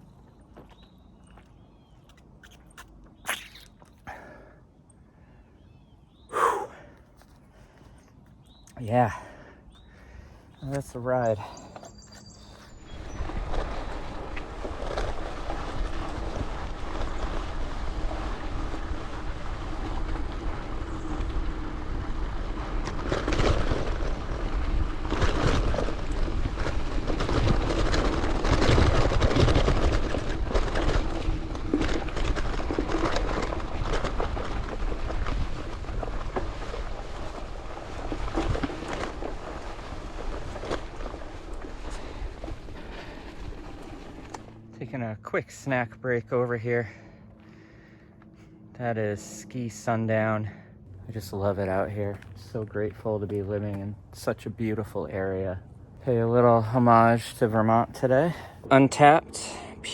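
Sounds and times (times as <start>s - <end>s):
tyres crunching over gravel: 6.3s - 59.2s
bike rattling: 7.6s - 48.5s.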